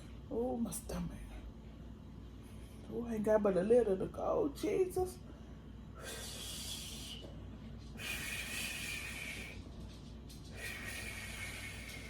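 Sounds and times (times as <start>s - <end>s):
woman breathing heavily: 5.3s - 12.0s.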